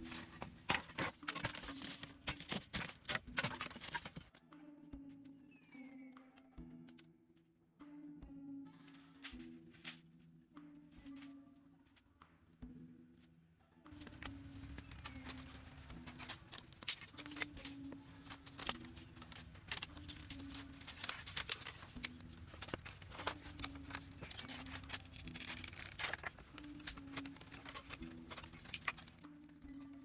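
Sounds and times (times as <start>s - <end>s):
clicks and scrapes of handling: 0.0s - 4.3s, 13.9s - 29.9s.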